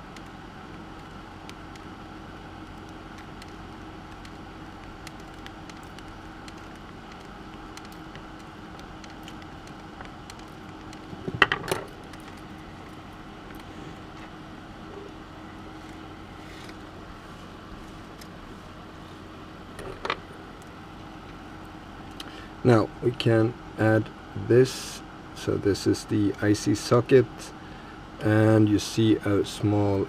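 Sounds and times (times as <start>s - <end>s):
side cutters snipping leads: 0.0s - 13.7s
steady low hum: 0.0s - 30.0s.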